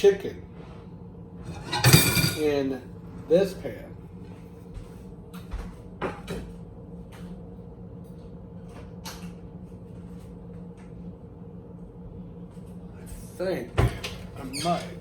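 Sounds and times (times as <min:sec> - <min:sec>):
steady low hum: 0:00.0 - 0:15.0
cookware knocks and clacks: 0:01.6 - 0:02.4.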